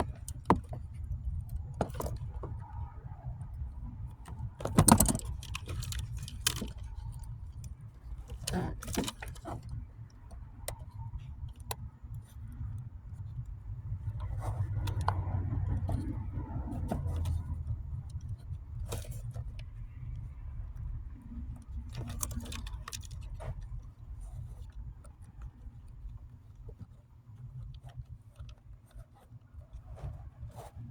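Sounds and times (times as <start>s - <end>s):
hand tools clicking and rattling: 4.6s - 9.7s.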